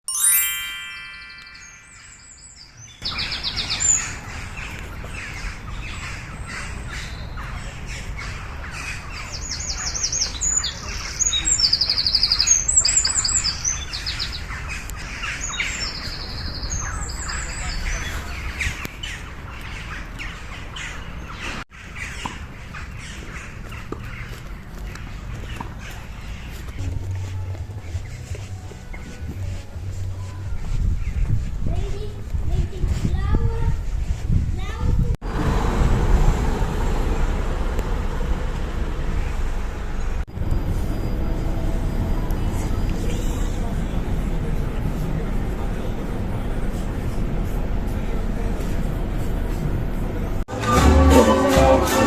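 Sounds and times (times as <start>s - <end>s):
short ringing tone: 0.1s - 2.3s
songbirds singing: 1.2s - 32.0s.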